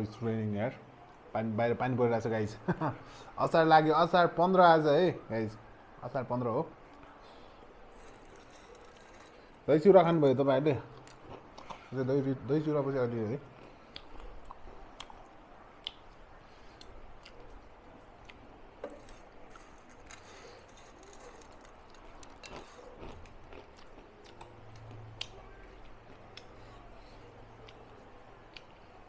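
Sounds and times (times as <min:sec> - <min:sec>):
chewing and eating: 0:06.9 - 0:09.7, 0:10.9 - 0:12.0, 0:13.4 - 0:29.0.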